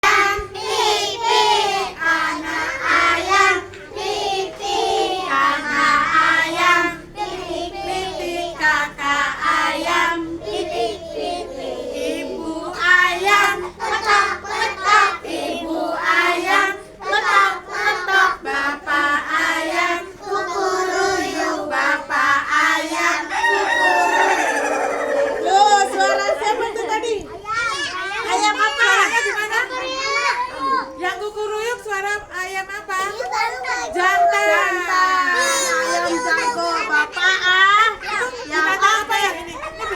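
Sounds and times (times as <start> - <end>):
young children singing: 0.0 - 27.2.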